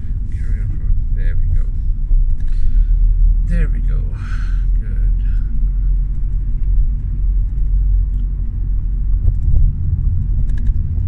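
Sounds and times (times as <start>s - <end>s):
car interior road rumble: 0.0s - 11.0s
faint clicks and rattles: 6.0s - 11.0s.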